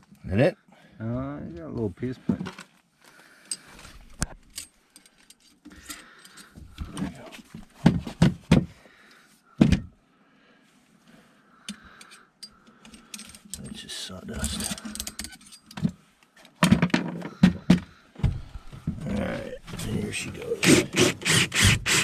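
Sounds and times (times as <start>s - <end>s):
tools knocking and rattling: 14.4s - 16.0s.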